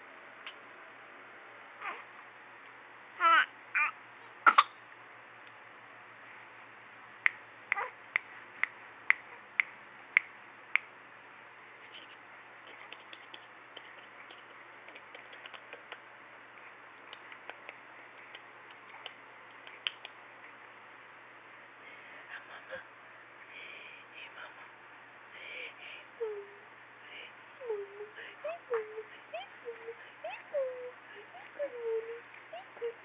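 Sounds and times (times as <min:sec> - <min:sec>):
baby vocalizing: 0:03.2 - 0:04.7, 0:07.7 - 0:08.0, 0:27.7 - 0:33.0.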